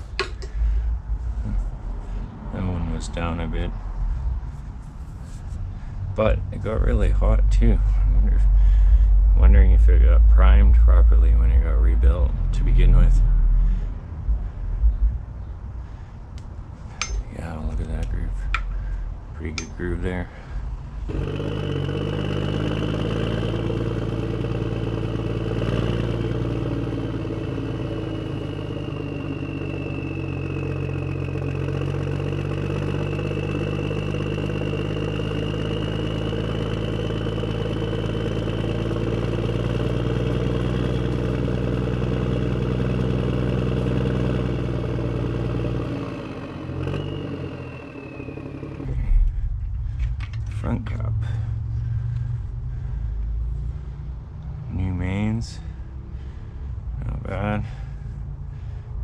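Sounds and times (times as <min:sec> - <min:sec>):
motor humming: 0:21.0 - 0:50.6.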